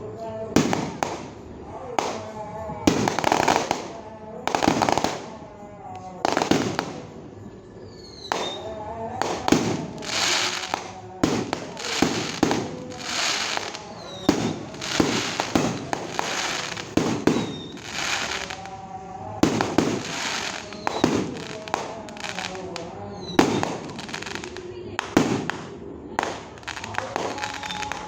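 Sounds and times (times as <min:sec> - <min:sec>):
fireworks bangs with crackling: 0:00.5 - 0:07.3, 0:08.0 - 0:28.0
firework whistles: 0:06.4 - 0:18.8, 0:19.4 - 0:21.7, 0:23.1 - 0:24.6.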